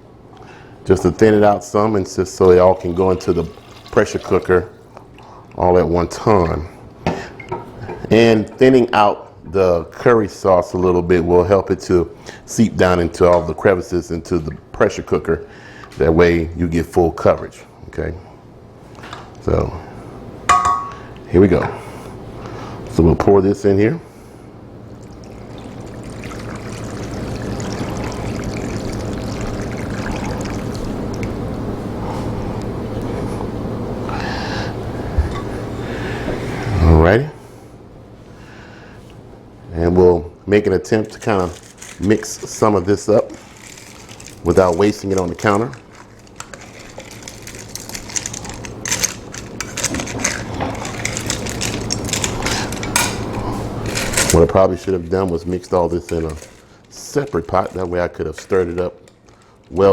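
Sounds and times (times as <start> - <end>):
liquid pouring with spatters: 2.2 - 5.6, 24.9 - 31.4, 41.0 - 59.9
utensil scraping and clinking a pot: 2.5 - 4.6, 41.0 - 59.9.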